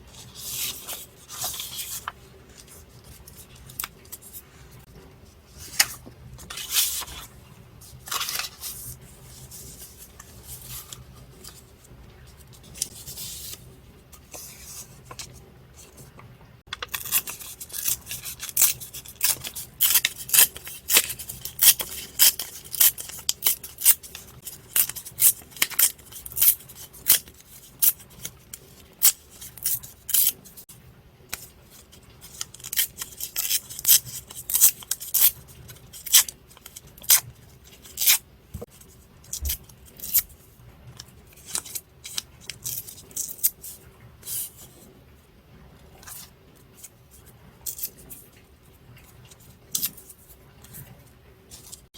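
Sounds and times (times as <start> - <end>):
scissors snipping paper: 16.8 - 30.4, 32.4 - 37.2.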